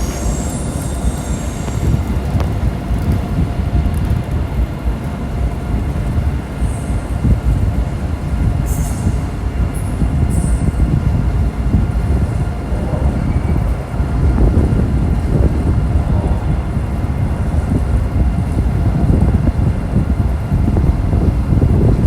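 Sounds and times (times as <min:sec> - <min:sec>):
high-pitched train squeaks: 0:00.0 - 0:02.9, 0:08.6 - 0:11.4
high-speed train rumbling: 0:00.0 - 0:22.0.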